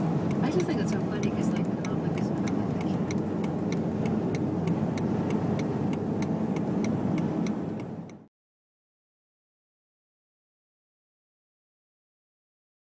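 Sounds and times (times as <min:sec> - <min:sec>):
sharp ticking: 0:00.0 - 0:08.2
road and wind noise in car: 0:00.0 - 0:08.3.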